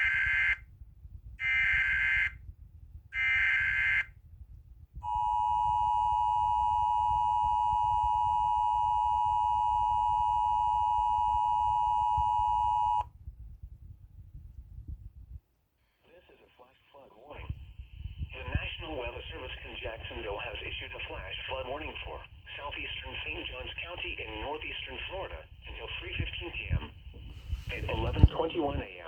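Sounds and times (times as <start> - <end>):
two-tone attention signal: 5.0 - 13.0.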